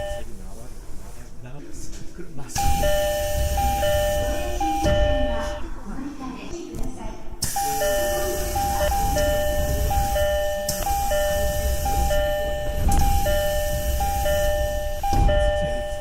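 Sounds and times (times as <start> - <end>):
two-note train door chime: 0.0 - 0.3, 2.6 - 5.6, 7.4 - 16.0
low train rumble: 0.0 - 16.0.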